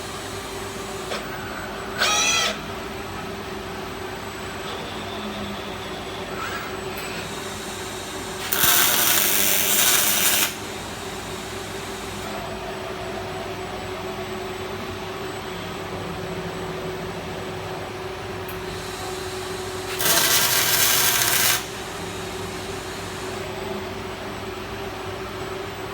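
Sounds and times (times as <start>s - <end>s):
welding machine hum: 7.0s - 12.5s, 18.4s - 24.3s
hissing crackle of welding: 7.2s - 12.3s, 18.6s - 23.5s.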